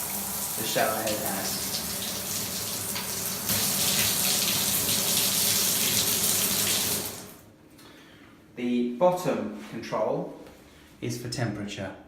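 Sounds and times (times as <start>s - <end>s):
shower head spraying water: 0.0s - 7.4s.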